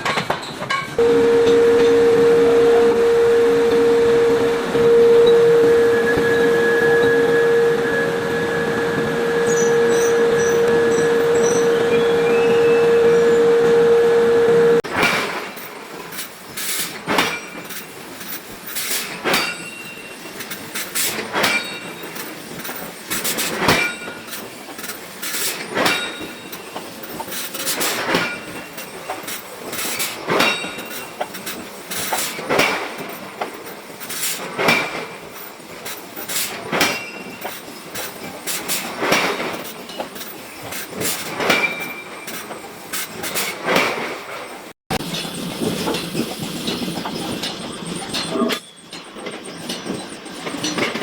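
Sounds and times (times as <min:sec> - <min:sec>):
loud steady tone: 0:01.0 - 0:14.9
hammer clanking on iron: 0:41.0 - 0:42.0.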